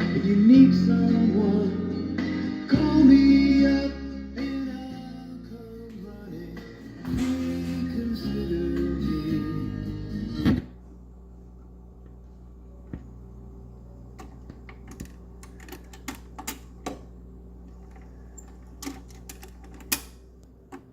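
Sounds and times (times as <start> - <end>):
record player music: 0.0 - 10.8
low electrical hum: 0.0 - 20.9.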